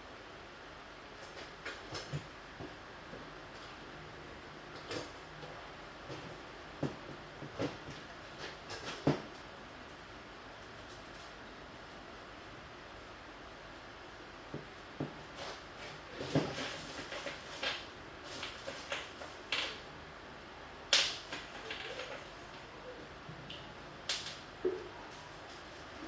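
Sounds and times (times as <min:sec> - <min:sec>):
objects clicking and knocking: 0:20.9 - 0:22.5.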